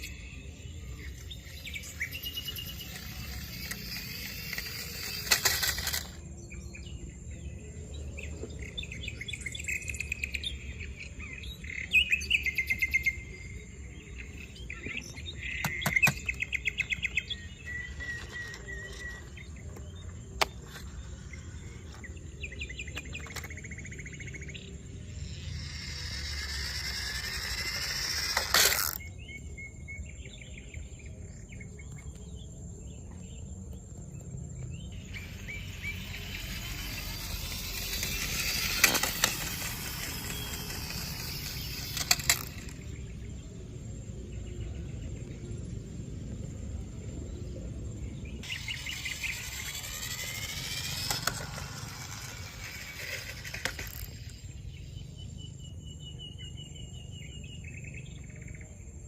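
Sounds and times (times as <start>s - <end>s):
small birds chirping: 0.0s - 59.0s
noisy scraping: 0.9s - 6.2s, 25.1s - 29.1s, 34.9s - 43.0s, 48.4s - 54.6s
sharp clicks: 26.0s - 29.1s, 35.1s - 42.9s.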